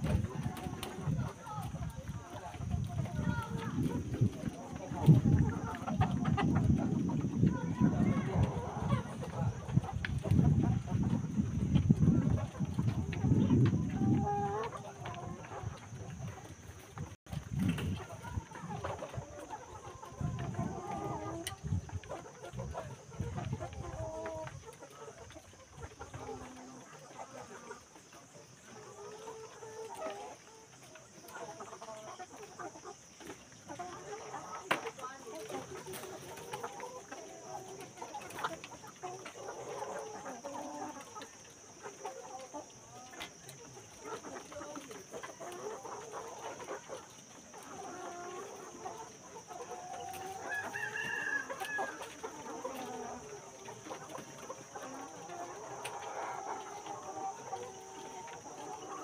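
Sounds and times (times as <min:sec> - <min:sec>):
chickens clucking: 0:00.0 - 0:59.0
rooster crowing: 0:50.5 - 0:52.0.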